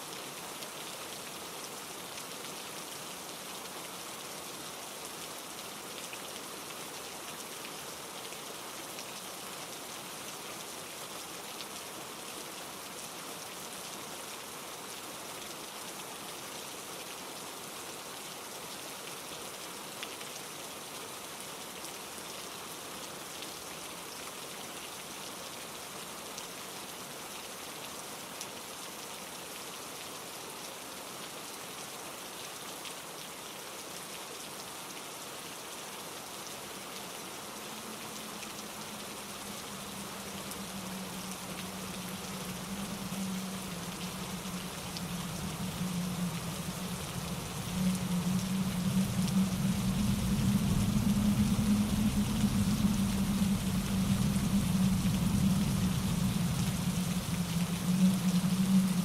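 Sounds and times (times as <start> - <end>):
rain falling through trees: 0.0 - 59.0
stream tumbling over rocks: 37.4 - 59.0.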